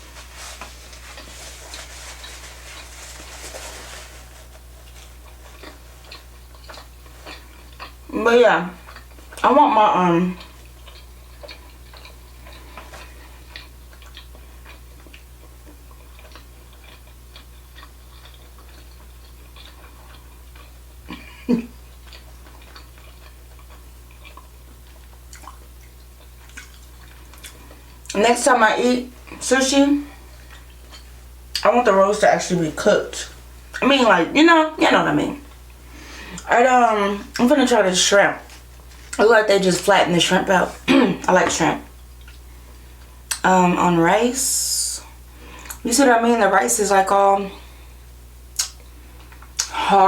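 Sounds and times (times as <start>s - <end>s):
low electrical hum: 0.0s - 50.0s
wet chewing crackles: 0.1s - 9.5s, 10.3s - 28.2s, 30.0s - 31.7s, 41.9s - 43.5s.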